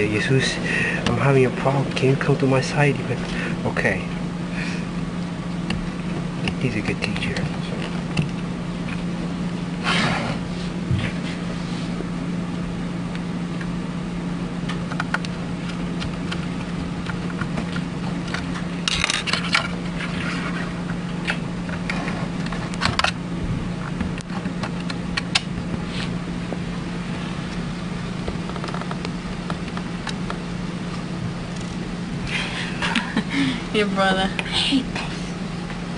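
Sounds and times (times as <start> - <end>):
low machine hum: 0.0 - 35.9
parts clicking and scraping: 14.7 - 23.2.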